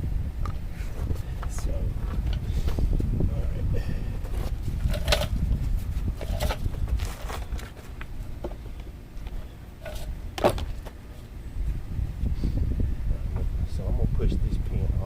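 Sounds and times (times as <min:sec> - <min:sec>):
metal parts clinking: 0:04.8 - 0:05.4, 0:06.2 - 0:07.7, 0:09.8 - 0:10.8.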